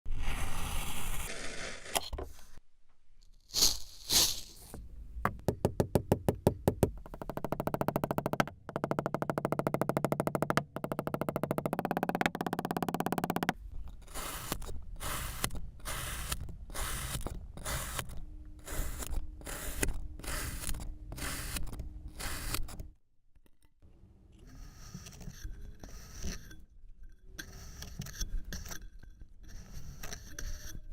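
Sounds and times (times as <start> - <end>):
tool scraping sand: 0.1 - 2.6, 13.8 - 22.9, 24.4 - 26.6.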